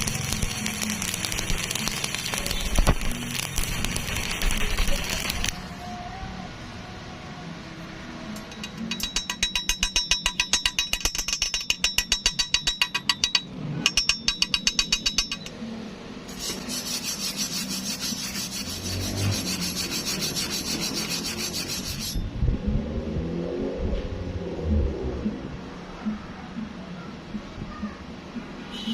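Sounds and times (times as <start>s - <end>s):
steady high hiss: 0.0s - 6.3s
scraping strokes on metal: 16.2s - 22.3s.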